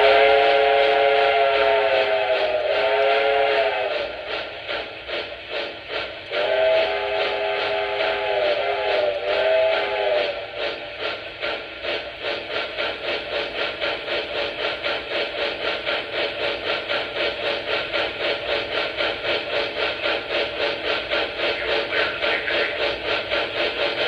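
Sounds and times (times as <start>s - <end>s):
steam whistle: 0.0s - 4.2s, 6.3s - 10.6s
steam chuffing: 0.0s - 24.0s.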